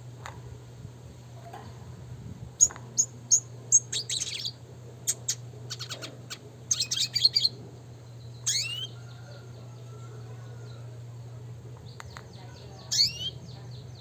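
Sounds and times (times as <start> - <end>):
low steady hum: 0.0 - 14.0
bird chirping: 2.6 - 11.0, 11.8 - 14.0.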